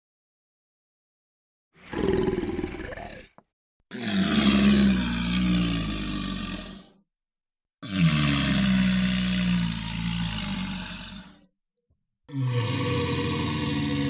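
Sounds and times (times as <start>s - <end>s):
monster roar: 1.8s - 7.0s, 7.8s - 11.4s, 12.3s - 14.0s.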